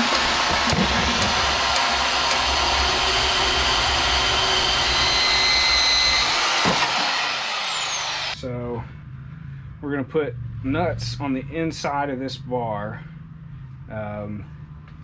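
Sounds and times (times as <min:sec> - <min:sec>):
power tool whining: 0:00.0 - 0:08.4.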